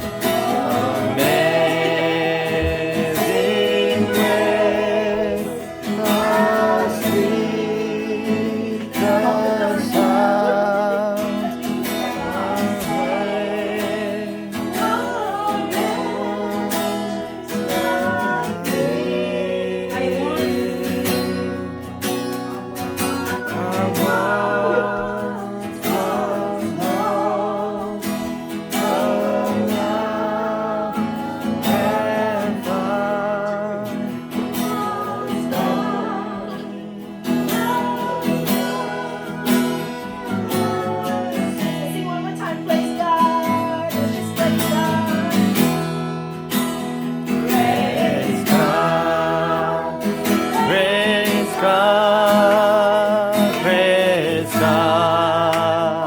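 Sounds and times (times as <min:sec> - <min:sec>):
person singing worship song: 0:00.0 - 0:56.0
strummed acoustic guitar: 0:00.0 - 0:56.0.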